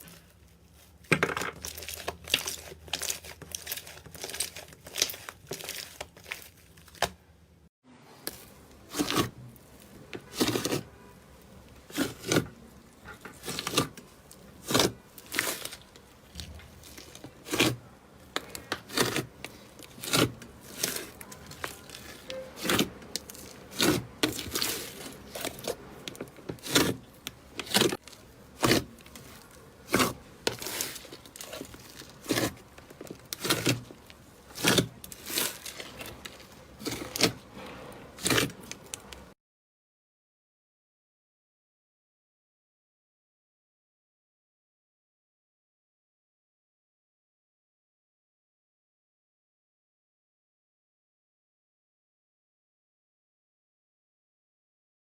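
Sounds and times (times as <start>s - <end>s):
slime squelching and popping: 0.0s - 7.2s.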